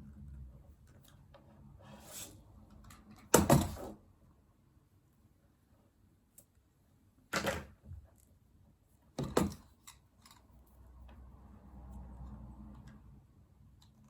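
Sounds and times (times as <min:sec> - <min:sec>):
clattering on a workbench: 0:09.2 - 0:10.4.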